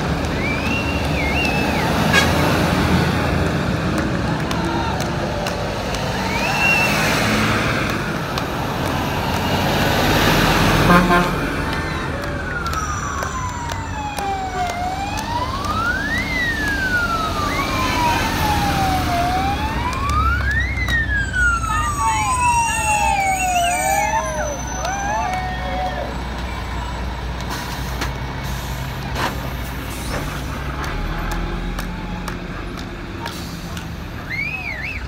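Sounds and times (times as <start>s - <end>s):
fire engine siren wailing: 0.0s - 35.0s
fire engines rumbling past: 0.0s - 35.0s
siren with wavering tone: 12.5s - 25.3s.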